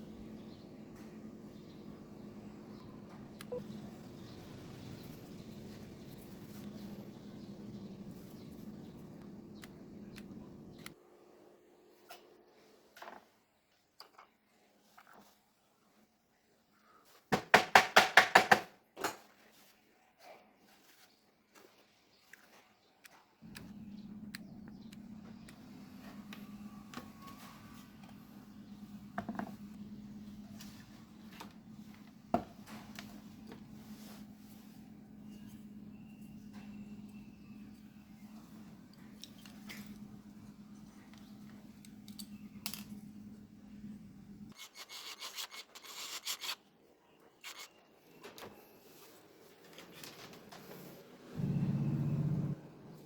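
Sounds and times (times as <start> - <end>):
low steady hum: 0.0 - 11.6, 23.4 - 44.6, 51.4 - 53.0
rubbing and scraping small parts: 44.5 - 46.6, 47.4 - 48.3.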